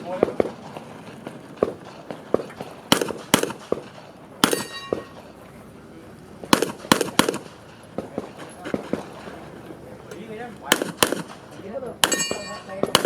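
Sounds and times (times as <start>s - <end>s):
handgun shots: 2.9s - 5.3s, 6.5s - 8.3s, 10.7s - 13.0s
brief metallic ring: 4.5s - 5.2s.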